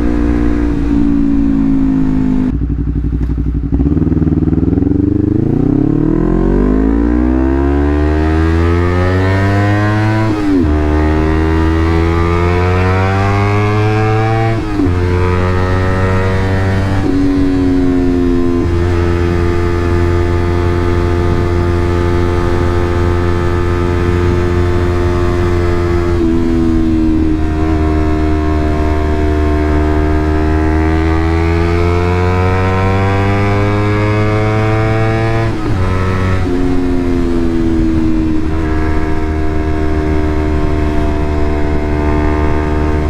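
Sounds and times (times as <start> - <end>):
motorcycle exhaust accelerating: 0.0 - 43.0.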